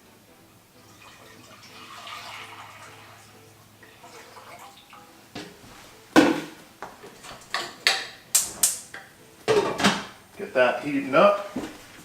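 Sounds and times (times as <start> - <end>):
milk pouring into pot: 0.7 - 5.6.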